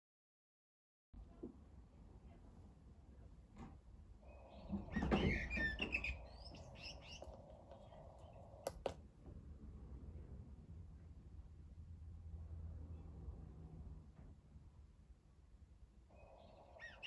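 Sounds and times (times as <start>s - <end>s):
birdsong from small speaker: 4.2s - 8.9s, 16.1s - 17.0s
sharp clicks: 7.1s - 9.0s.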